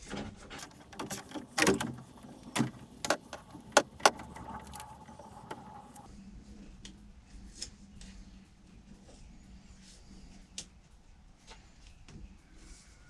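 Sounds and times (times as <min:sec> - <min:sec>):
quiet fumbling: 0:00.6 - 0:06.1
sharp clicks and knocks: 0:00.6 - 0:06.1.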